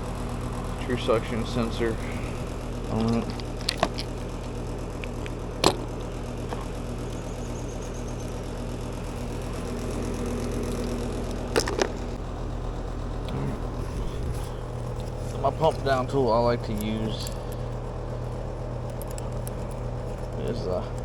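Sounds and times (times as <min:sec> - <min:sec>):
air conditioner humming: 0:00.0 - 0:21.0
sharp metal clicks: 0:14.8 - 0:21.0.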